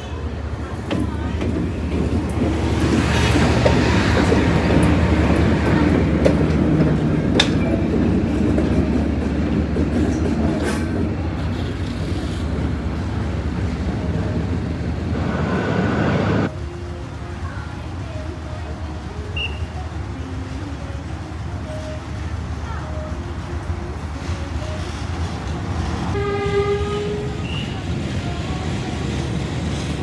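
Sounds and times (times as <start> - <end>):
locomotive engine drone: 0.0 - 30.0
wheel clicks over rail joints: 0.6 - 13.4.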